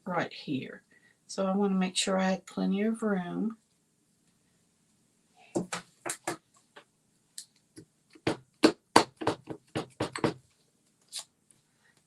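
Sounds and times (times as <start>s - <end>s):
paper pieces tapping on card: 5.6s - 6.4s, 8.2s - 10.4s.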